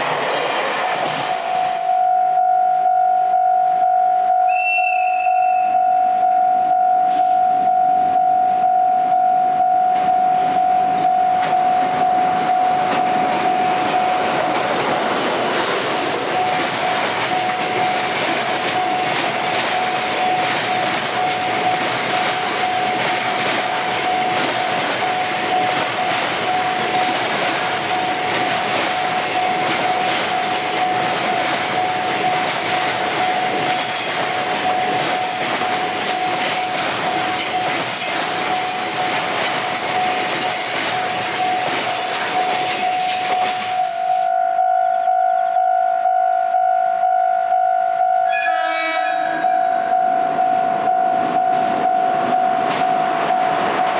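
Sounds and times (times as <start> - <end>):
train wheels clicking over rails: 0.0 - 1.8, 11.4 - 44.2, 51.7 - 53.9
level-crossing alarm ringing: 1.1 - 53.9.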